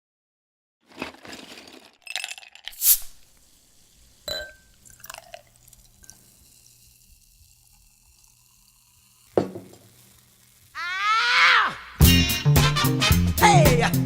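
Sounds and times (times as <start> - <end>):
rustling and handling noises: 0.8 - 2.0.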